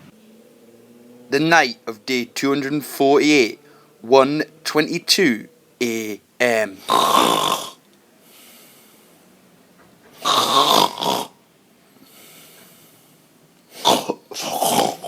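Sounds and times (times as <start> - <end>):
soft breathing: 3.6 - 4.0, 8.1 - 9.4, 11.9 - 13.3
person snoring: 6.7 - 7.8, 10.2 - 11.3, 13.7 - 15.0.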